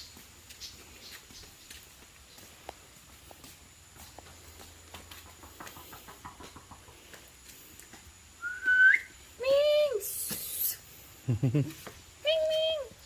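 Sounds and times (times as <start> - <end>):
person whistling: 8.4 - 9.1.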